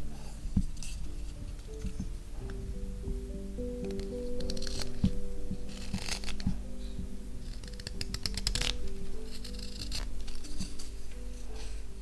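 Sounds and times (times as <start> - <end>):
knife scraping through wood: 7.5 - 11.8.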